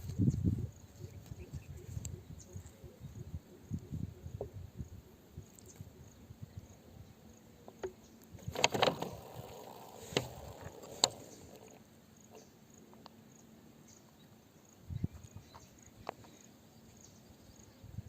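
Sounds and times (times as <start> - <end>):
sharp knocks and clicks: 7.7 - 9.4.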